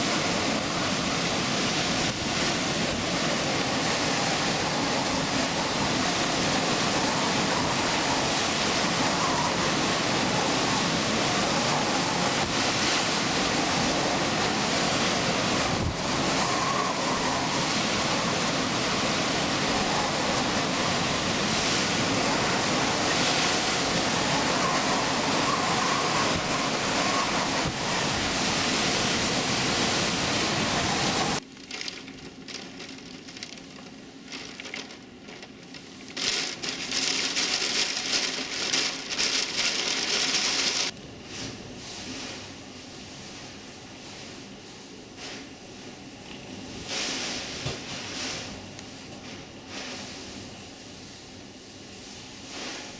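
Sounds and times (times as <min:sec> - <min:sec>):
strong wind blowing: 0:00.0 - 0:31.4
wind noise on microphone: 0:00.0 - 0:31.4
rain pattering: 0:00.0 - 0:41.0.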